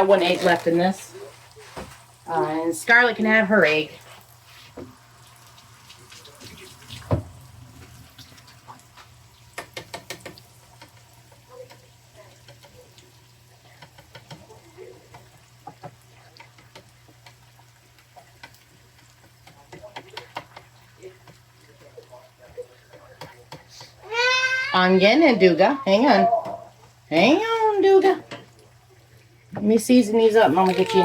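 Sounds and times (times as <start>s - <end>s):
utensils clicking and tapping: 9.5s - 13.0s, 13.6s - 23.9s, 30.4s - 31.0s.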